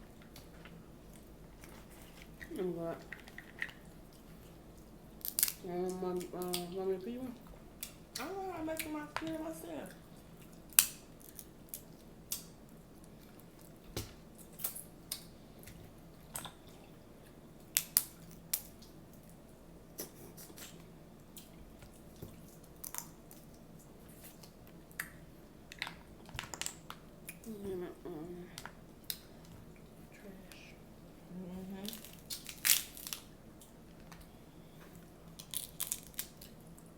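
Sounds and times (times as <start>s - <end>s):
seafood shells cracking: 3.1s - 4.2s, 5.2s - 6.7s, 10.4s - 16.6s, 17.6s - 19.0s, 20.6s - 27.5s, 31.8s - 34.2s, 35.2s - 36.9s
chewing: 20.0s - 27.6s.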